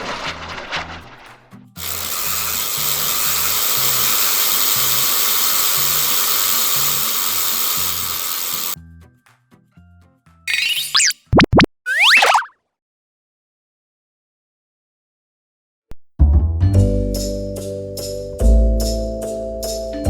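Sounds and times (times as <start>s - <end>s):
train passing with rattling rush: 0.0s - 4.0s
background music with bass line: 16.2s - 20.0s.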